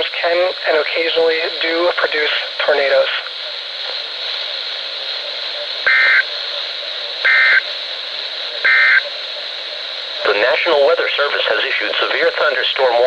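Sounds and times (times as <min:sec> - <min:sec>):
radio hiss: 0:00.0 - 0:13.0
two-tone buzzing data bursts: 0:05.8 - 0:06.3, 0:07.2 - 0:07.7, 0:08.6 - 0:09.1.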